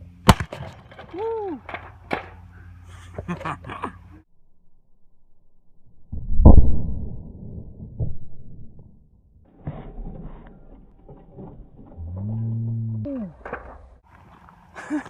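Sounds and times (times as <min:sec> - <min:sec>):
low rumble: 0:04.2 - 0:14.0.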